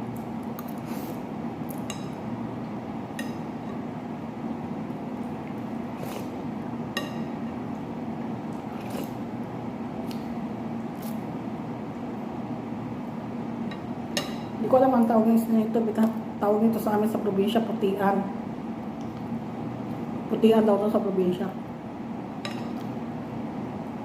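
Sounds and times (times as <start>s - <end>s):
wet eating noises: 7.8s - 9.2s.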